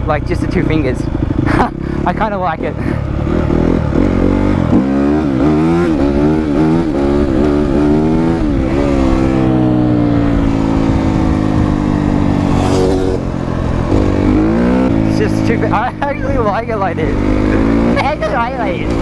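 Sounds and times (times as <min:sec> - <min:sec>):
dirt bike engine idling: 0:00.0 - 0:05.6, 0:06.9 - 0:19.0
dirt bike engine revving: 0:00.0 - 0:19.0.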